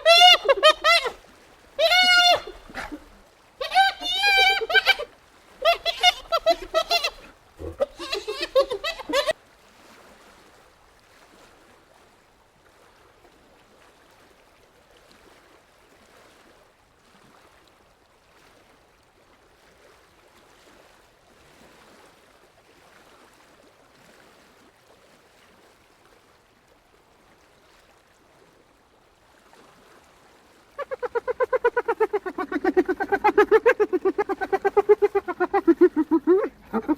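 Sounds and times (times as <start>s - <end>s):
hyena calls: 0.0s - 1.2s, 1.8s - 9.3s, 30.8s - 36.9s
hyena giggling laugh: 0.0s - 1.2s, 1.8s - 9.3s, 30.8s - 36.9s.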